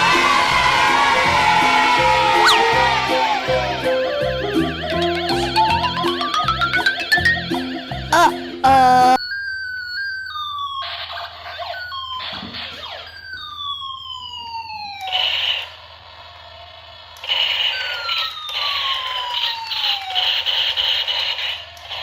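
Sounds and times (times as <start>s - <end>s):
long falling tone: 0.0s - 10.7s
toy gun laser tones: 9.0s - 13.8s, 14.8s - 15.8s, 17.2s - 22.0s.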